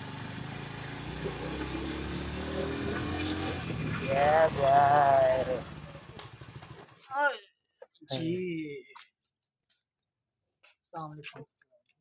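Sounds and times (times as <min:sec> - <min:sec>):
vehicle engine rumble: 0:00.0 - 0:07.0
wavering animal call: 0:01.2 - 0:06.1.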